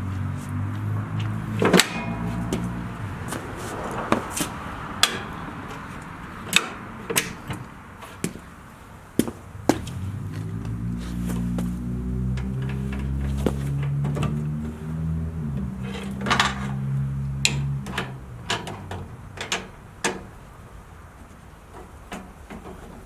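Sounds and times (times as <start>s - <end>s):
low engine-like hum: 0.0s - 21.1s
sharp metal clanks and clicks: 1.6s - 2.7s.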